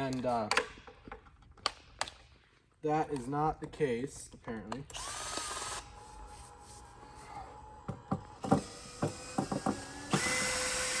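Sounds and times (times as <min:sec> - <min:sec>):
power drill: 0:04.9 - 0:11.0
sharp clicks and knocks: 0:07.9 - 0:10.6.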